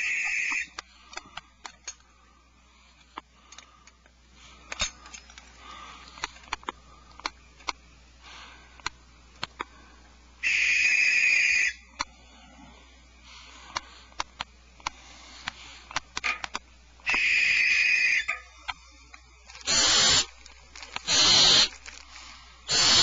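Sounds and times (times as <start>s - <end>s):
owlets rasping hiss: 19.6s - 23.0s.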